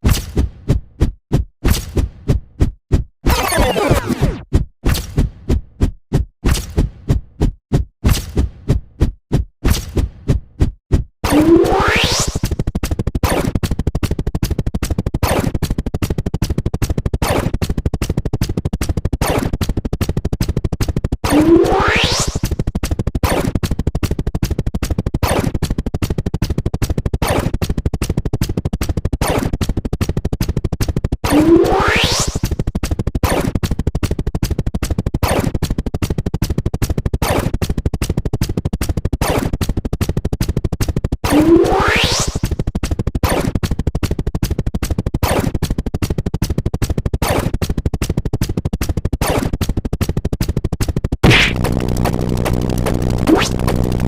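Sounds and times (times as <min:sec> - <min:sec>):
rapid ticks: 0:12.4 - 0:21.2, 0:22.4 - 0:31.2, 0:32.4 - 0:41.2, 0:42.4 - 0:54.0
rapid electronic ticking: 0:50.1 - 0:54.0.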